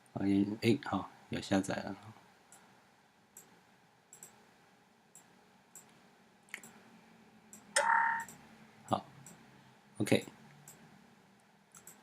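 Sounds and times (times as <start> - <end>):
computer mouse clicks: 3.4 - 4.4, 10.5 - 10.9, 11.7 - 12.0.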